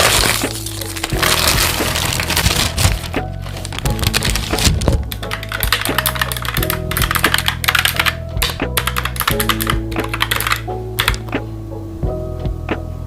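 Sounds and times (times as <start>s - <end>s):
mechanical keyboard typing: 3.8s - 11.3s.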